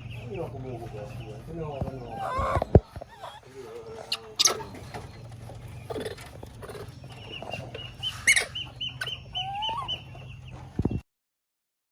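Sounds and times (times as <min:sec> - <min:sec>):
baby monkey chirping calls: 0:01.1 - 0:10.4.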